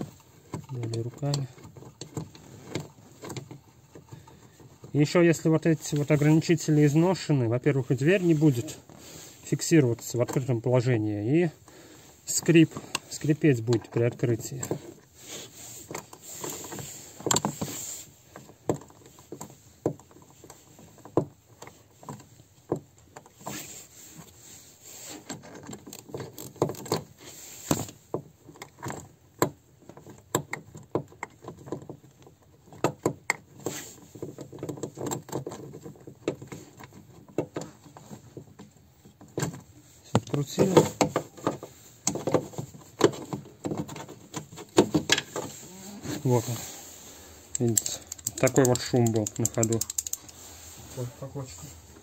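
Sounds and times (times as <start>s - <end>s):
metallic clicks and rattles: 47.5s - 50.6s.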